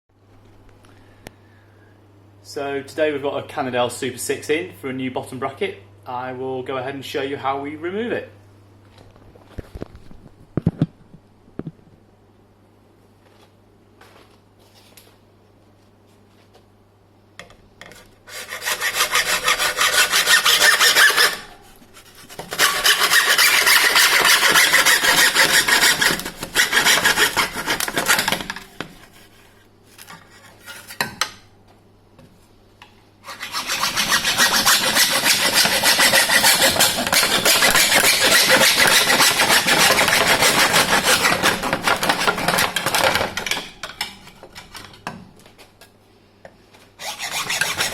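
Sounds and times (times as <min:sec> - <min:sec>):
hand saw cutting carbon: 0:18.3 - 0:28.5, 0:33.3 - 0:43.5, 0:47.0 - 0:47.9.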